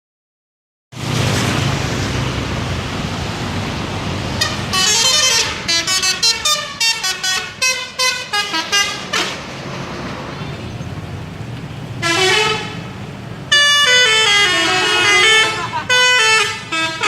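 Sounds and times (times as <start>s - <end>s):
bus engine rumbling: 1.0s - 17.0s
multi-tone musical horn: 4.4s - 9.4s, 12.0s - 12.8s, 13.5s - 17.0s.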